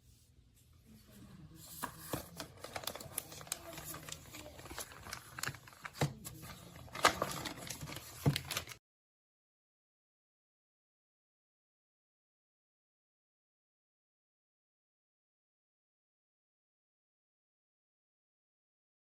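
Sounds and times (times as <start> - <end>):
packaging rustling and crinkling: 1.7 - 8.8.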